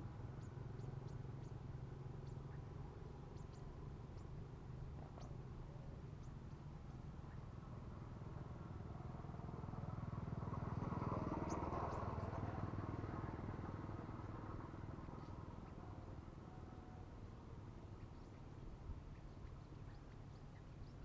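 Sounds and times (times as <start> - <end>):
vehicle engine passing by: 7.9 - 16.4.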